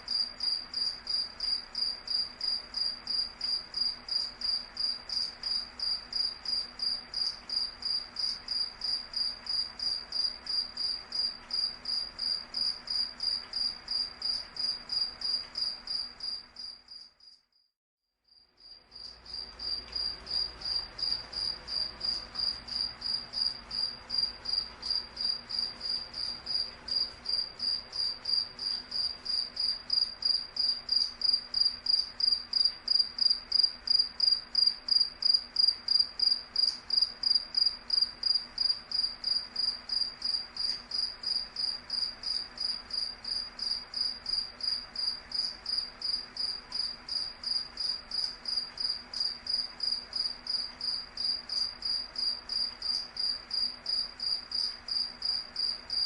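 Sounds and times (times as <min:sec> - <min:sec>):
cricket chirping: 0:00.0 - 0:17.7, 0:18.3 - 0:56.0.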